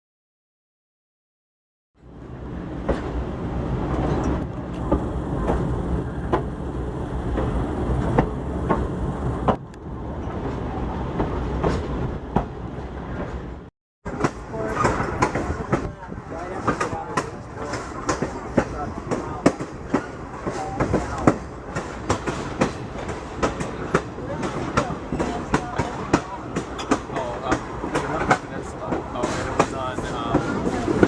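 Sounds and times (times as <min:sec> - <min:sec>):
train rumbling along rails: 0:02.0 - 0:31.0
wheels clicking over rail joints: 0:16.6 - 0:31.0.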